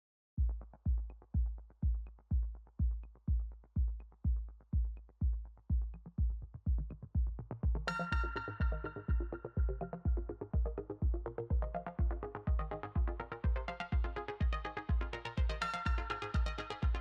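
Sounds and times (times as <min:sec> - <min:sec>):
drum machine kick: 0:00.4 - 0:17.0.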